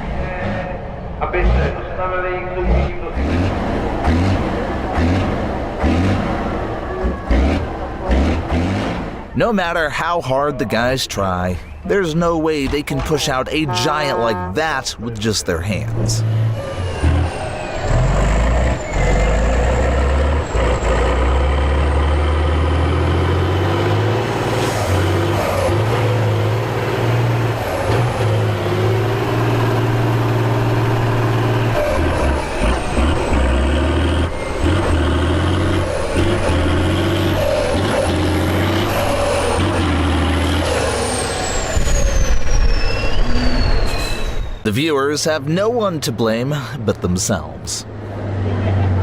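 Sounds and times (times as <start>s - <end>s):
truck engine at high revs: 0.0s - 9.7s, 15.5s - 49.0s.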